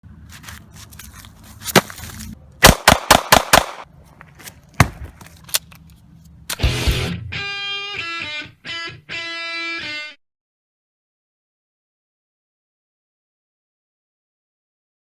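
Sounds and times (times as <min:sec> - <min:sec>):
pistol gunshots: 0:02.6 - 0:03.9.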